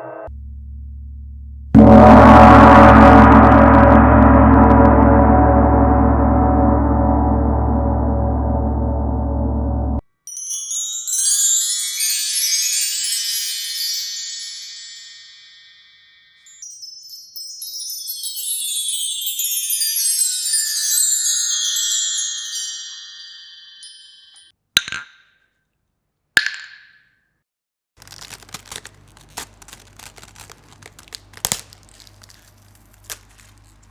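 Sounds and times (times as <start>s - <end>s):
high chime-like tinkling tones: 10.2s - 24.5s.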